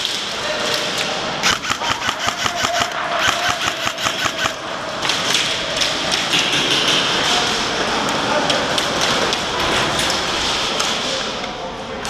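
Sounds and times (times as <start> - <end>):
airsoft rifle rapid shots: 1.4 - 4.6.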